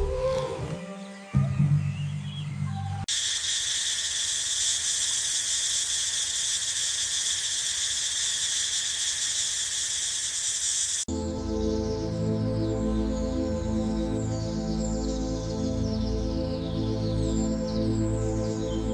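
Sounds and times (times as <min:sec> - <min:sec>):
high-pitched insect chorus: 0:03.1 - 0:11.1.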